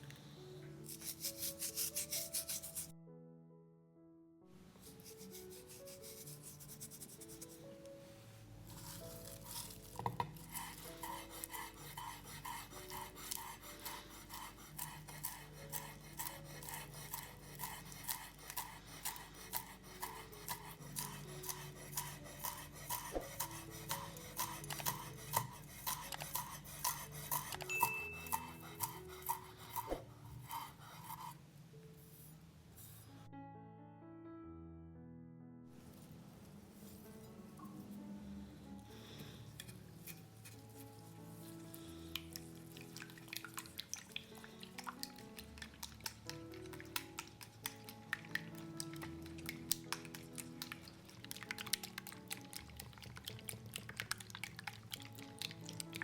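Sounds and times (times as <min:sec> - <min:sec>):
soft background music: 0:00.0 - 0:56.0
utensil scraping a dish: 0:08.7 - 0:31.4.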